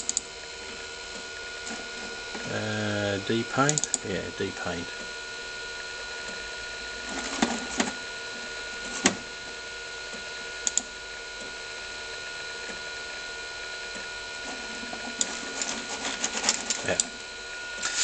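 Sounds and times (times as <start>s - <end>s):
hard drive sharp clicks: 0.0s - 0.3s, 3.7s - 4.0s
hard drive hum and whine: 0.0s - 18.0s.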